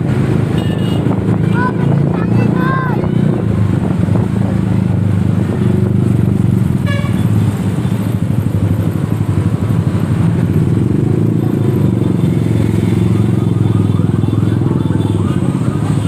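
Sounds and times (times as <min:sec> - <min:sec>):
motorcycles: 0:00.0 - 0:16.0
road traffic engines: 0:00.0 - 0:16.0
horn toot: 0:06.8 - 0:07.3.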